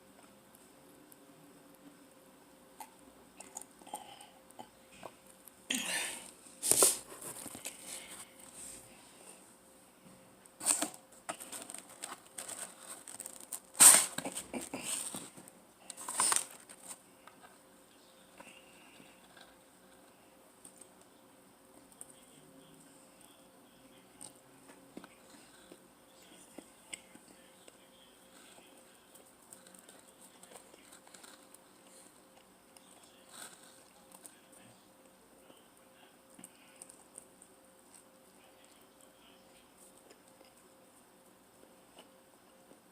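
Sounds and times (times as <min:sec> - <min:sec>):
faint steady hum: 0:00.0 - 0:42.9
pizza being chewed: 0:10.6 - 0:21.1, 0:21.8 - 0:42.8.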